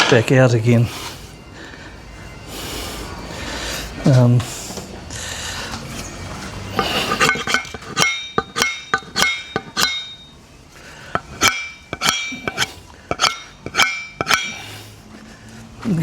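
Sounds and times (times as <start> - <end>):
blows on steel blade ringing: 6.8 - 10.4, 11.2 - 14.7.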